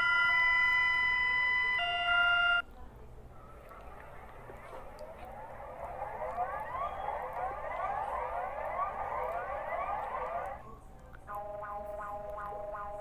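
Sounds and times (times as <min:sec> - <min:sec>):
pulsing alarm beeps: 0:00.0 - 0:02.6, 0:05.4 - 0:10.6
alarm rising sweeps: 0:04.2 - 0:10.6.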